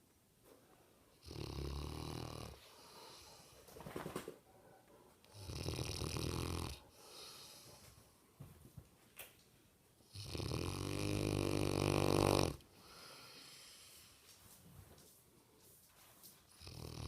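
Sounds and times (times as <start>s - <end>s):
quiet breaths: 0.3s - 17.0s
dog snoring: 1.2s - 3.4s, 5.3s - 7.7s, 10.1s - 12.6s, 16.6s - 17.0s.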